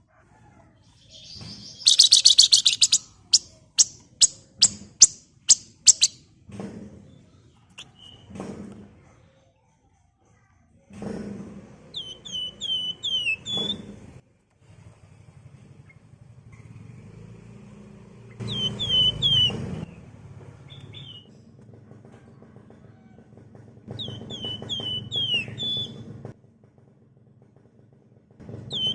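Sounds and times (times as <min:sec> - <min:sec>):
birds whistling calls: 0:00.9 - 0:06.3, 0:12.0 - 0:13.9, 0:18.3 - 0:20.1, 0:20.7 - 0:21.3, 0:24.0 - 0:26.1, 0:28.7 - 0:28.9.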